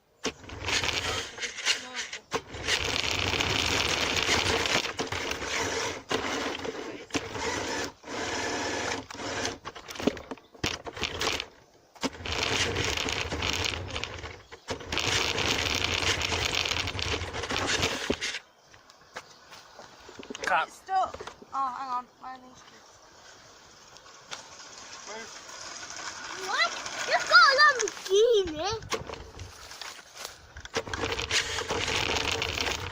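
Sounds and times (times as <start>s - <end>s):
toy car electric motor whirring: 0.2s - 18.4s, 24.0s - 29.8s, 30.6s - 32.9s
wheels rolling over ground: 0.2s - 21.8s, 22.6s - 32.9s.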